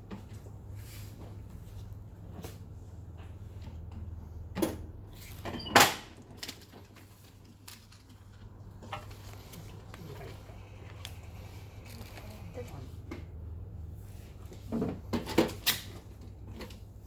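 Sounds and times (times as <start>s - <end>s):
steady low hum: 7.1s - 15.6s
knocks and clunks of handling: 14.5s - 16.9s.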